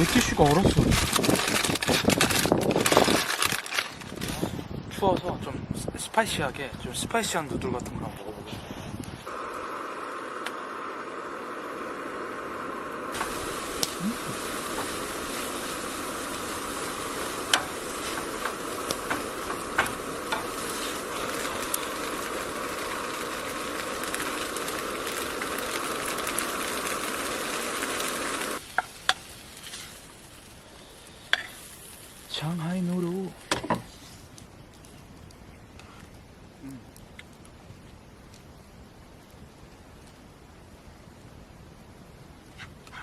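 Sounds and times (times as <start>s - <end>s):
noodles sizzling in a pan: 9.3s - 33.3s.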